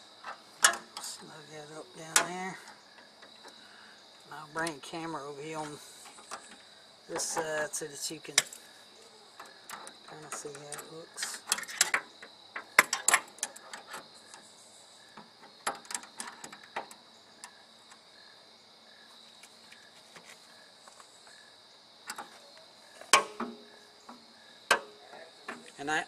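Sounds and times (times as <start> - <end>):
insects trilling: 0.0 - 26.0
handling clicks and knocks: 0.2 - 1.3, 8.3 - 14.5, 15.1 - 18.0, 22.1 - 26.0.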